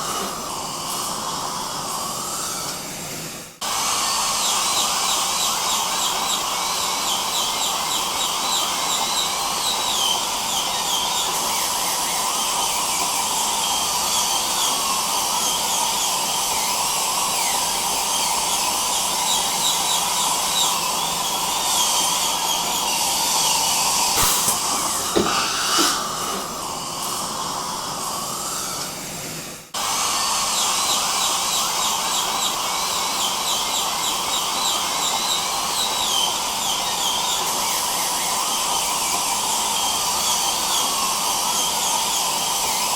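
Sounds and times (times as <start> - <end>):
dental drill whining: 0.0 - 42.9
dental suction hissing: 3.6 - 29.0.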